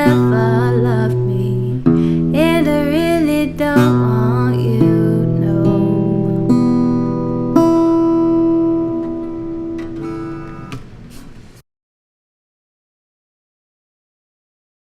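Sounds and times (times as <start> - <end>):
acoustic guitar chords: 0.0 - 11.2.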